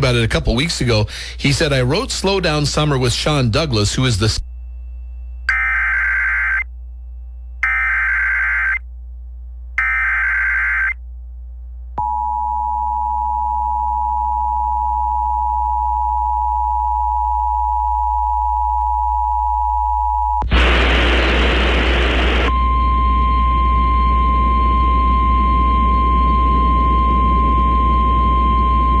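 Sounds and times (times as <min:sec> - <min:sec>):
loud burst of hiss: 0:20.5 - 0:22.5.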